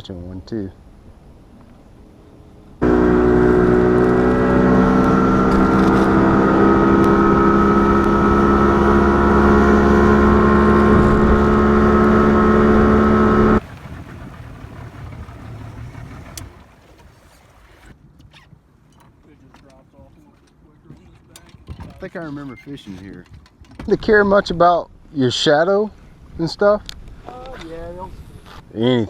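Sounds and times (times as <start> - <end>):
rush of wind and water: 0.8 - 18.1
outboard motor running: 2.8 - 17.9.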